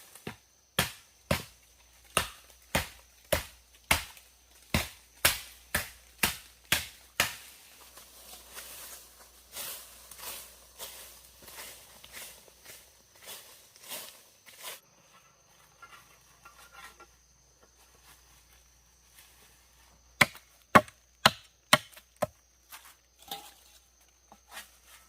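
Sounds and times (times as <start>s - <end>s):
wood chopping strokes: 0.1s - 8.0s, 20.2s - 23.6s.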